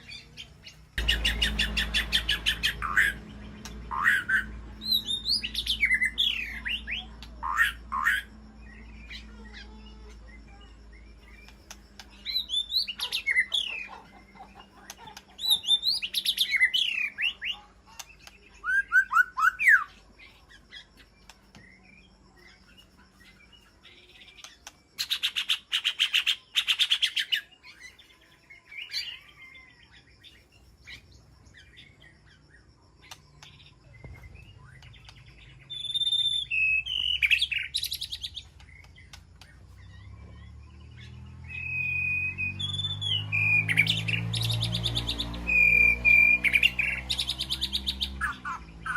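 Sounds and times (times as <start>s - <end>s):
bird singing whistled phrases: 3.9s - 8.3s, 18.3s - 19.9s, 33.9s - 48.9s.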